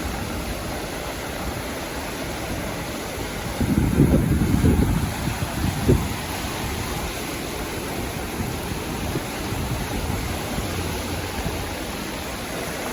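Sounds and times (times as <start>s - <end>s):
surf washing onto beach: 0.0s - 12.9s.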